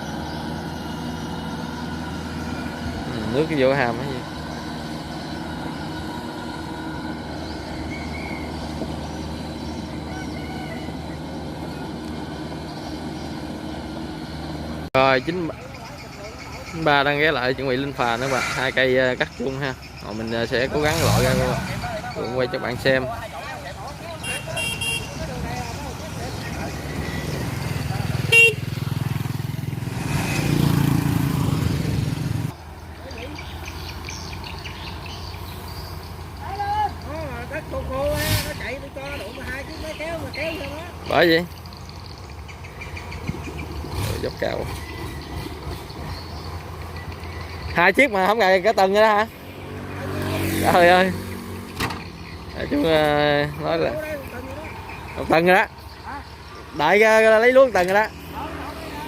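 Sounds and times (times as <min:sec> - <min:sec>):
combine harvester diesel engine: 0:00.0 - 0:29.9.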